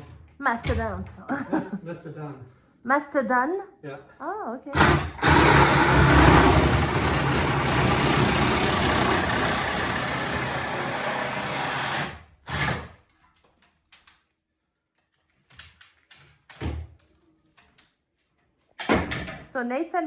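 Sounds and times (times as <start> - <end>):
reciprocating saw cutting wood: 4.8 - 13.0.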